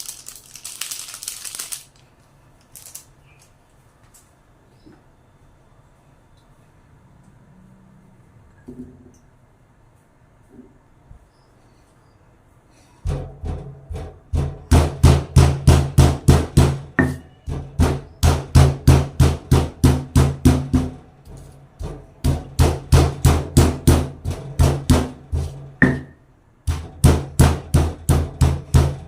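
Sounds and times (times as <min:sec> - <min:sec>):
knife chopping on wooden board: 0:22.2 - 0:26.1.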